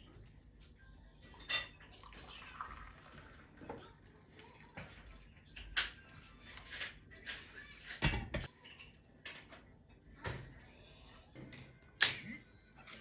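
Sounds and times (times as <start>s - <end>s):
dishes and cutlery clattering: 1.2s - 2.1s, 4.7s - 10.5s.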